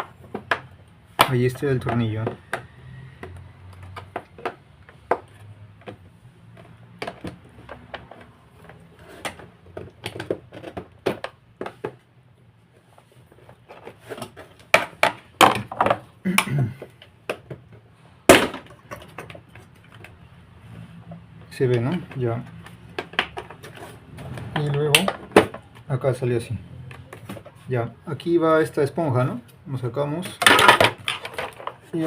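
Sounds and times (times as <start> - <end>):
hard plastic parts clicking: 0.0 - 12.0, 21.4 - 25.9, 30.2 - 31.9.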